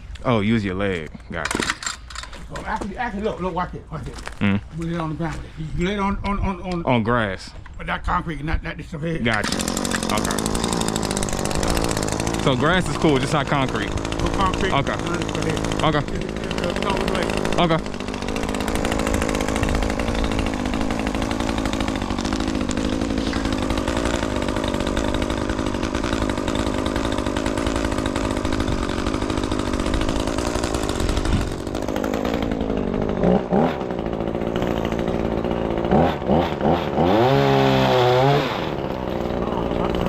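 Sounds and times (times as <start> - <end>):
chainsaw cutting and revving: 9.2 - 40.0.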